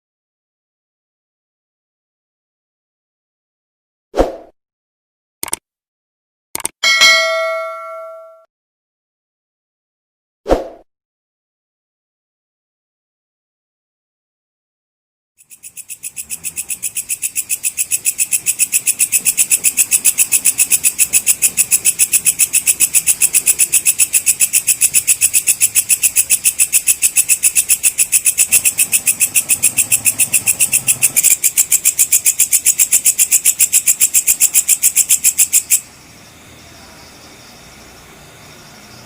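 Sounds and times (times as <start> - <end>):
bush-cricket buzzy chirping: 15.4 - 39.0.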